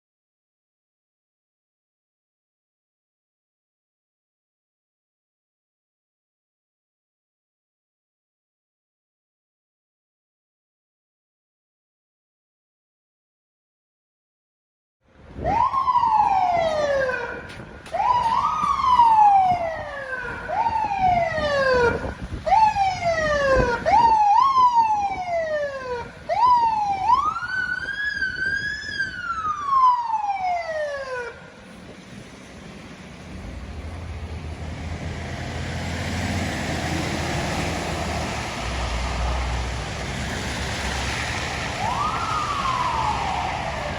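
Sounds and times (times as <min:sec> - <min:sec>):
engine and road noise: 0:15.0 - 0:43.9
emergency siren swooping: 0:15.4 - 0:31.7, 0:32.6 - 0:43.9.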